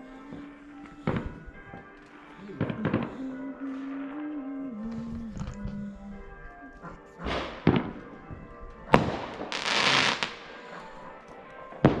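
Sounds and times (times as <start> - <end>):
fireworks bangs: 0.0 - 5.2, 7.1 - 12.0
fireworks crackling hiss: 7.2 - 8.2, 8.9 - 11.1
fireworks hissing swell: 8.9 - 10.9.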